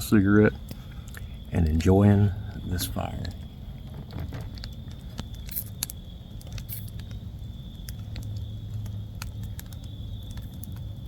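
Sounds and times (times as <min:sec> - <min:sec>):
low steady rumble: 0:00.0 - 0:11.0
campfire crackling and popping: 0:03.8 - 0:11.0.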